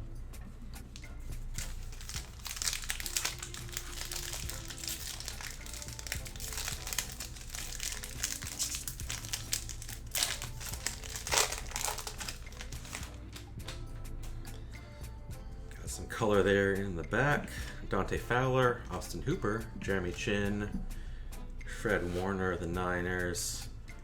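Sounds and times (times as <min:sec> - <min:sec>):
plastic wrapper crinkling and tearing: 0:01.6 - 0:13.5.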